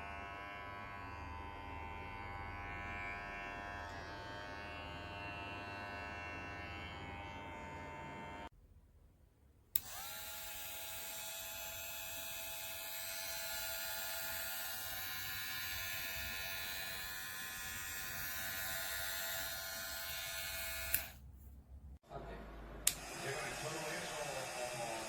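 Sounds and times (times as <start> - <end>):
hair clipper motor buzzing: 0.0 - 8.5, 9.8 - 21.2
hair clipper switch click: 9.8 - 10.4, 20.0 - 21.2.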